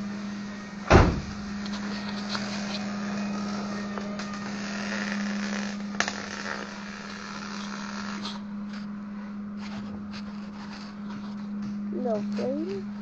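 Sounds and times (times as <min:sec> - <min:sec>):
steady low hum: 0:00.0 - 0:13.0
welding arc crackling: 0:01.6 - 0:08.4.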